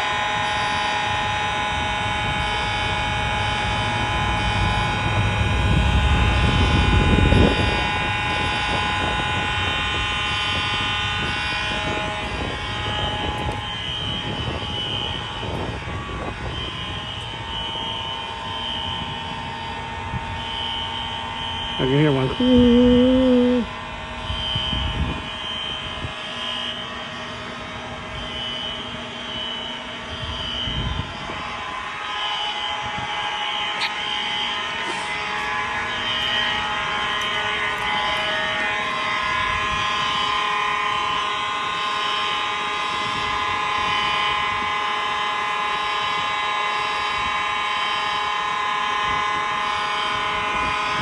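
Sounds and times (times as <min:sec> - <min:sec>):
high-pitched pulsing tone: 0:00.0 - 0:26.0
fire alarm horns: 0:00.0 - 0:51.0
loud steady mid-pitched tone: 0:00.0 - 0:51.0.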